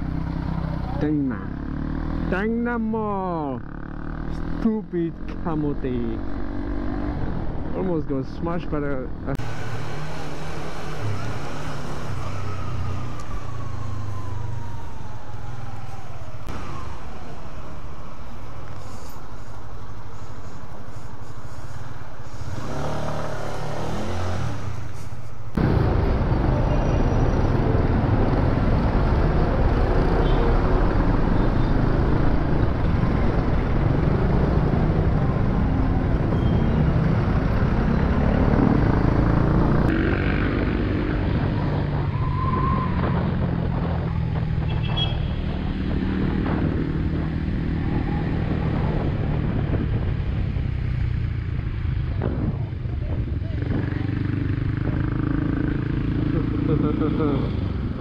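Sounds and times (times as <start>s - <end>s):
wind rush over microphone: 39.4s - 55.4s.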